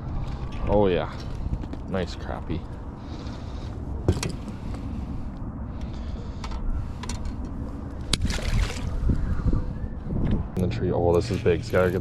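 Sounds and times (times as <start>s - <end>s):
wind rumble on microphone: 0.0s - 12.0s.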